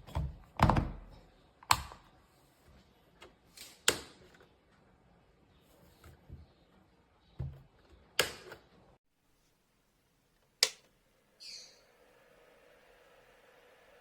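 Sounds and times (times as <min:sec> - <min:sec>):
sharp clicks: 0:10.6 - 0:10.9.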